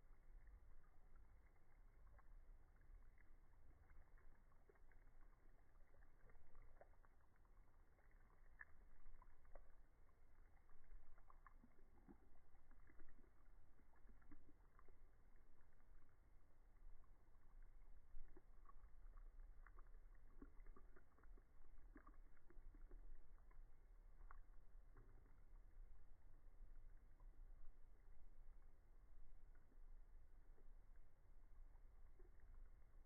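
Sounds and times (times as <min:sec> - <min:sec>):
faint ticks: 0:00.0 - 0:25.8
faint low rumble: 0:00.0 - 0:33.0.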